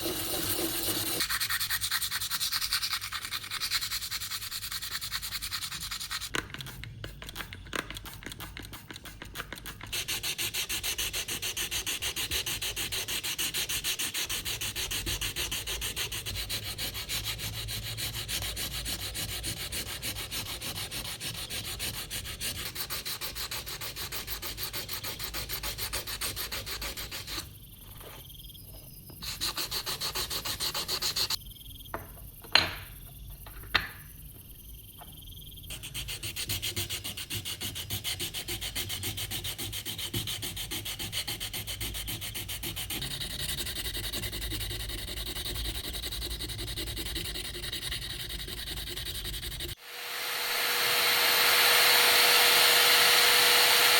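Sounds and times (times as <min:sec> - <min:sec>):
sandpaper rubbing on metal: 0:00.0 - 0:06.3, 0:08.4 - 0:27.5, 0:29.2 - 0:31.4, 0:35.7 - 0:49.8.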